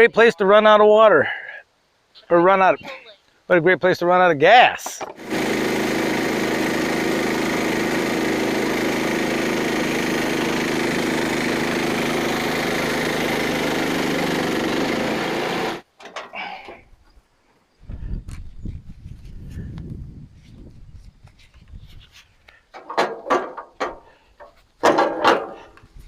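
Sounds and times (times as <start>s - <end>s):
engine running: 5.1s - 15.9s.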